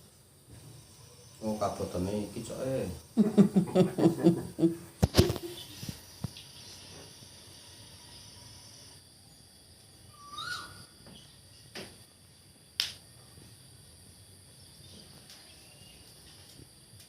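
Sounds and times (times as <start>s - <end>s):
high insect-like hiss: 0.0s - 17.0s
sharp clicks: 12.8s - 13.0s.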